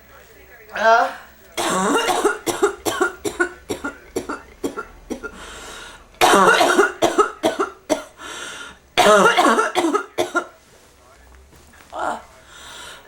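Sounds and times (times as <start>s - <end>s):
person coughing: 1.6s - 5.5s, 6.2s - 8.2s, 9.0s - 10.5s.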